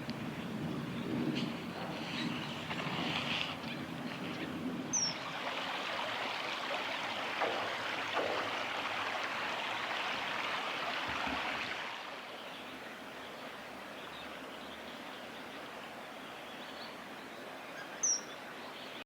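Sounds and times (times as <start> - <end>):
river water rushing: 4.9 - 16.4.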